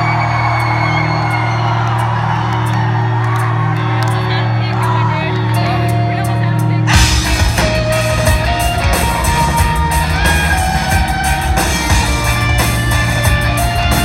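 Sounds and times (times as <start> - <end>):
rock band playing live: 0.0 - 14.0
drums with crashing cymbals: 7.0 - 14.0.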